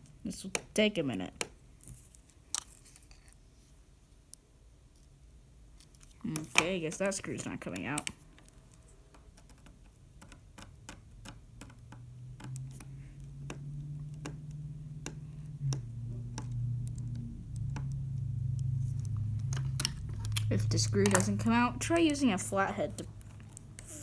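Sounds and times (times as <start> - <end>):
low steady hum: 0.0 - 24.0.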